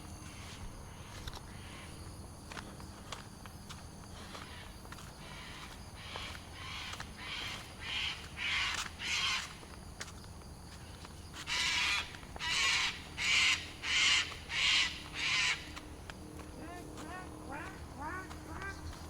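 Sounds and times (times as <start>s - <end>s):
bird calling: 4.2s - 9.8s, 10.7s - 19.0s.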